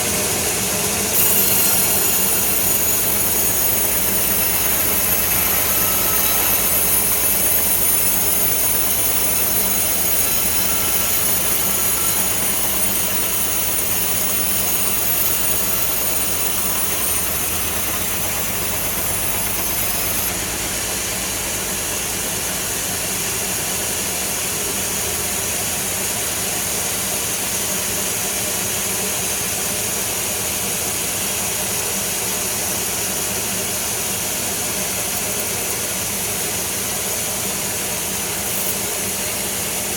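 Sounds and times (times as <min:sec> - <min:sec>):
saw high whine: 0:00.0 - 0:22.8, 0:33.6 - 0:39.9
sawmill machinery cutting timber: 0:00.0 - 0:39.9.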